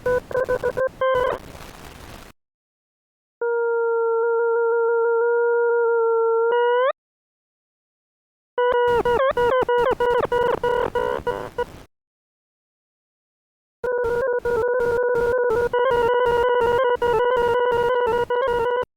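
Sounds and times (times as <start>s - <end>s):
choppy electronic tone with clicks: 0.0s - 1.4s, 8.7s - 11.7s, 13.9s - 18.9s
stuttering steady electronic tone: 8.8s - 11.8s, 13.9s - 18.9s.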